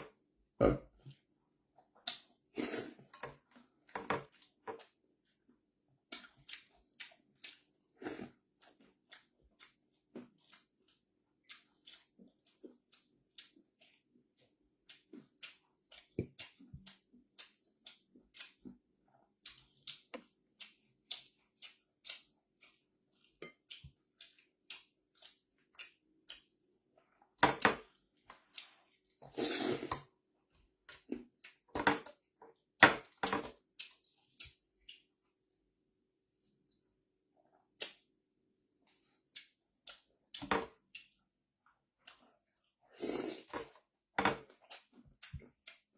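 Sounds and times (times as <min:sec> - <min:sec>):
mouth clicks and chewing: 0:02.0 - 0:03.3, 0:06.1 - 0:26.7, 0:33.8 - 0:35.2, 0:38.9 - 0:41.2, 0:42.0 - 0:43.7, 0:44.5 - 0:45.9.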